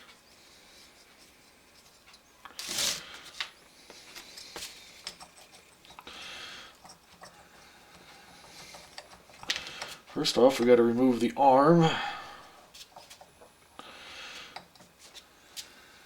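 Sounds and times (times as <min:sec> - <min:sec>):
scraping rub: 0:00.0 - 0:06.0.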